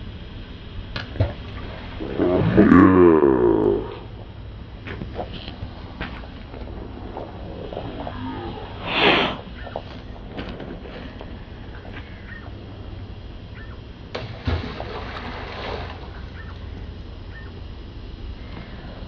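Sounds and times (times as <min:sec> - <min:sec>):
water splash: 0:14.1 - 0:16.2.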